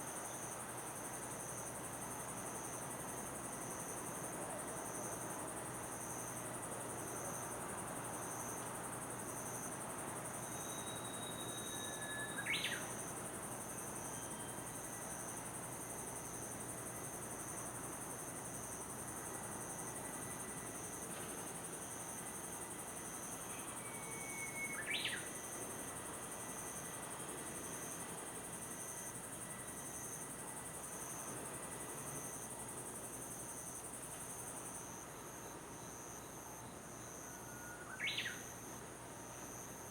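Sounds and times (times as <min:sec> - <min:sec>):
insects chirring: 0:08.3 - 0:39.7.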